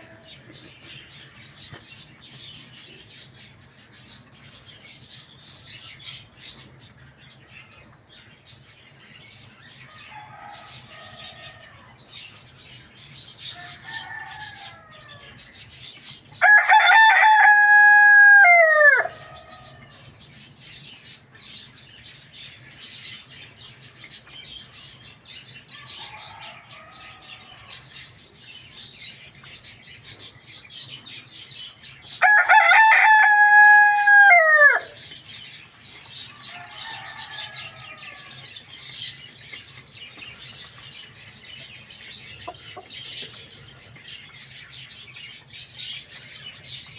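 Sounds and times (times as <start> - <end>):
rooster crowing: 13.6 - 15.4, 16.4 - 20.0, 25.8 - 27.8, 32.2 - 35.0, 36.4 - 38.6.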